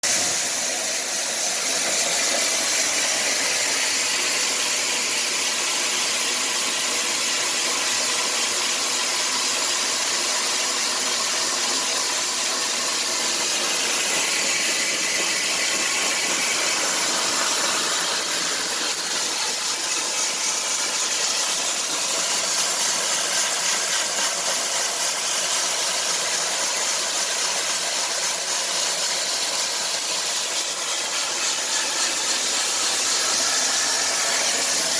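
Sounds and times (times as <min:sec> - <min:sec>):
blowing air hiss: 0:00.0 - 0:06.8, 0:12.2 - 0:24.5, 0:30.2 - 0:34.9
machine hum: 0:00.0 - 0:25.3, 0:29.6 - 0:34.9.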